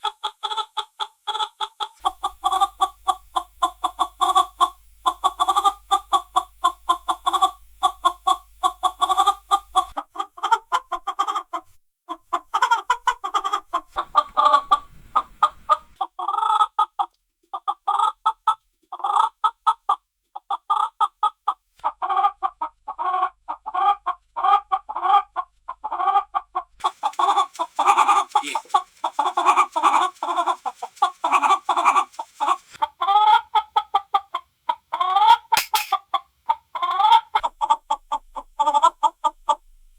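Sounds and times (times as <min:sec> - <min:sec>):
chickens clucking: 0:00.0 - 0:39.6.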